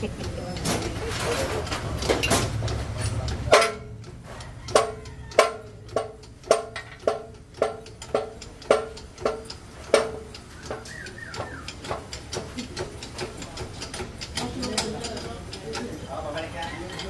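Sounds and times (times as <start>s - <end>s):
hammer striking metal: 2.0s - 12.2s.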